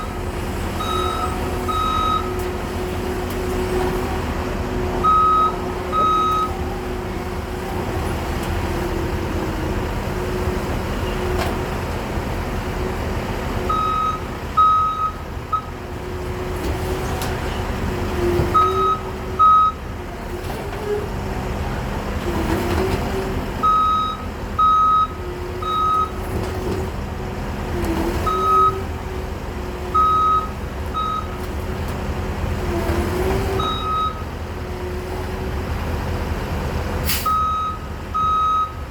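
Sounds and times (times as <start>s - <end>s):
diesel engine running: 0.0s - 38.9s
backup alarm beeping: 5.0s - 6.5s, 37.3s - 38.8s.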